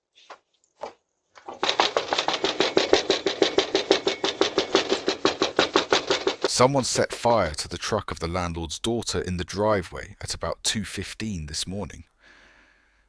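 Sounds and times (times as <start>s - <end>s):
rapid clatter of sharp knocks: 1.4s - 6.6s.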